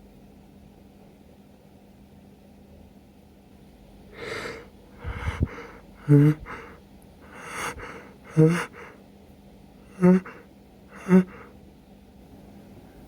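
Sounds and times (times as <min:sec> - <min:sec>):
sharp noisy inhalations: 0:04.2 - 0:09.0, 0:09.9 - 0:10.4, 0:11.0 - 0:11.5
short voiced gasps: 0:04.2 - 0:09.0, 0:09.9 - 0:10.4, 0:11.0 - 0:11.5.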